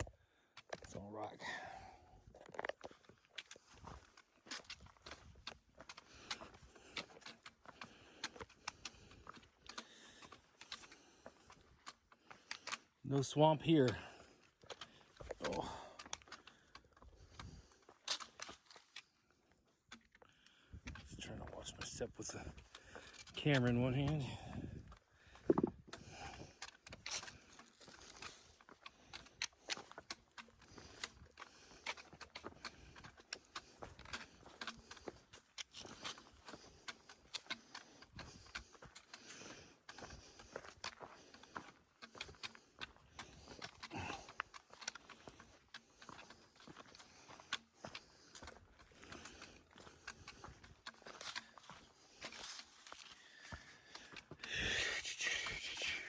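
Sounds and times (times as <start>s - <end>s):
boot footsteps on rocky trail: 0.0s - 56.0s
boots scuffing on rock: 27.2s - 54.5s.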